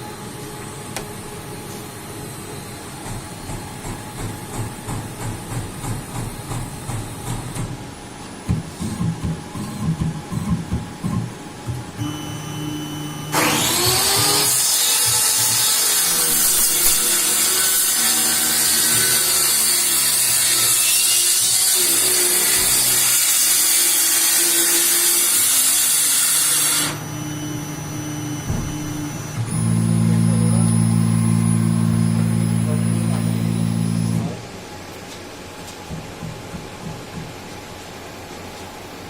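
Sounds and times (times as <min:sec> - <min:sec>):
router spindle whine and hiss: 0:12.0 - 0:34.4.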